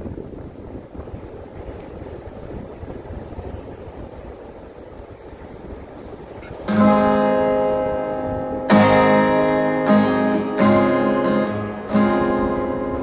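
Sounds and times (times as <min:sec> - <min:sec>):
guitar strumming chords: 0:06.5 - 0:13.0.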